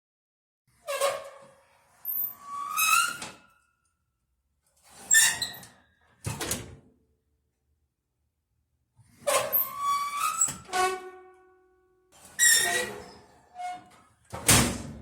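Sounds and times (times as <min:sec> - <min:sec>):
oven door squeaking: 0:12.4 - 0:13.9.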